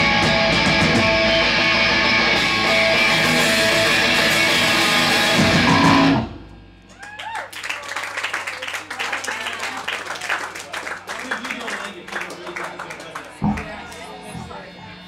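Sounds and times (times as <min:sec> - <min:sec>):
live band guitar music: 0:00.0 - 0:06.4, 0:13.3 - 0:15.0.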